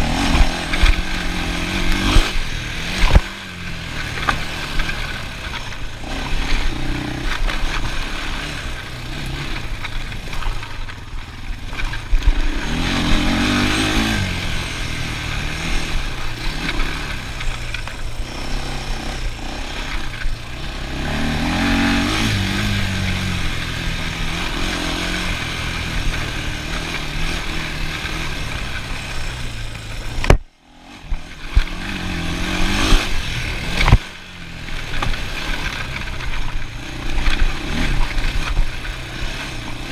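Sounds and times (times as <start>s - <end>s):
atv engine revving: 0.0s - 39.9s.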